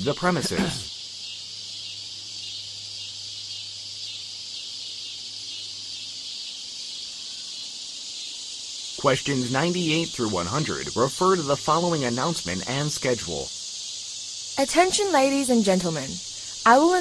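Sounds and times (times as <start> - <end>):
steady high-pitched hiss: 0.0 - 17.0
faint low hum: 9.0 - 13.5.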